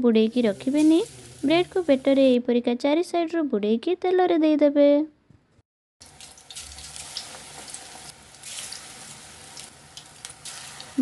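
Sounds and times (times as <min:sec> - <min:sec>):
food frying in hot oil: 0:00.4 - 0:02.2, 0:06.0 - 0:11.0.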